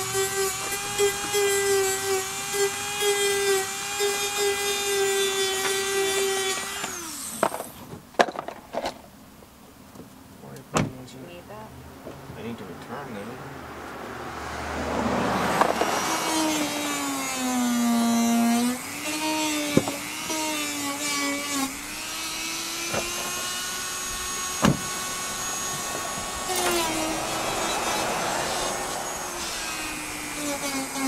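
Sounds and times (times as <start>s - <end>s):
power tool motor whine: 0.0s - 7.8s, 15.4s - 31.0s.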